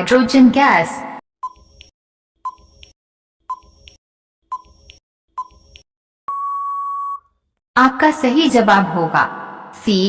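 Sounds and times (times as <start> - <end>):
short electronic beeps: 6.3 - 7.3.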